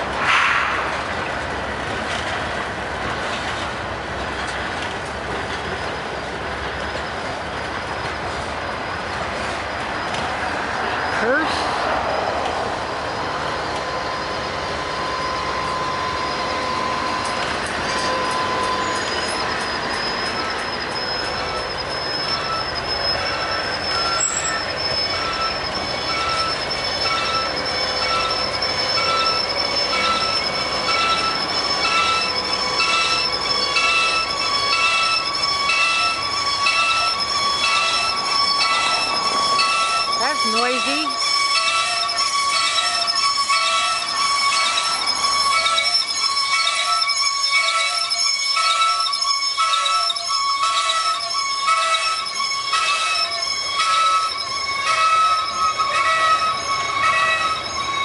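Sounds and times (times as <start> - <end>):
train wheels rumbling on rails: 0.0 - 58.0
high-pitched wheel squeal: 12.9 - 58.0.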